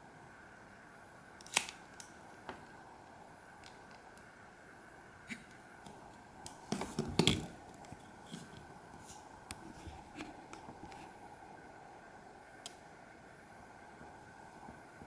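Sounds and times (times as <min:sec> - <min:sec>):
low steady hiss: 0:00.0 - 0:15.0.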